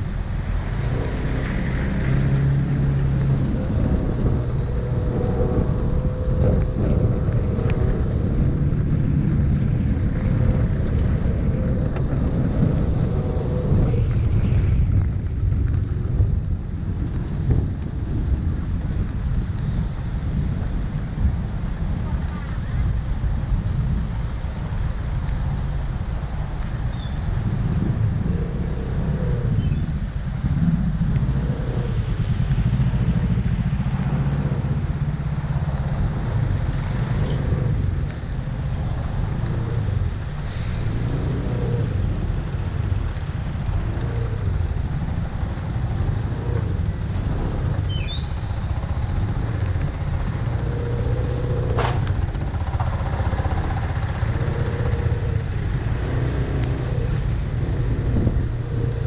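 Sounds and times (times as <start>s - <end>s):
road traffic rumble: 0.0s - 59.0s.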